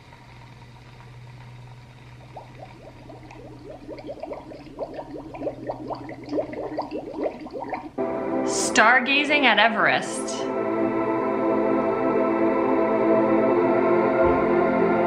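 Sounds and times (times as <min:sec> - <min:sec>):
low steady hum: 0:00.0 - 0:12.4.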